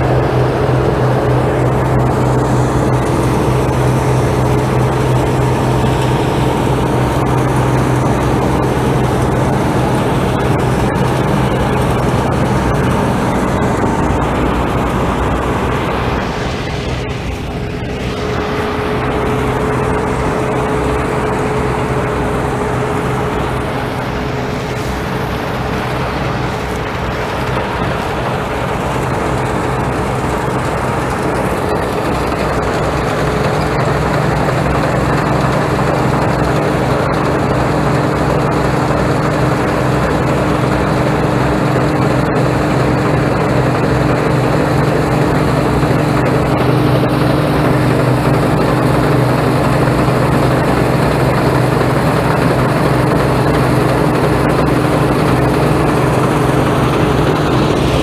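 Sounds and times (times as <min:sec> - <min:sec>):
harvest machinery engine running: 0:00.0 - 0:58.0.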